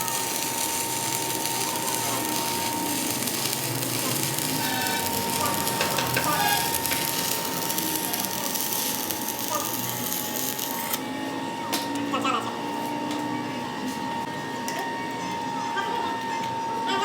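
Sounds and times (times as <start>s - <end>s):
metalworking crackling hiss: 0.0s - 11.0s.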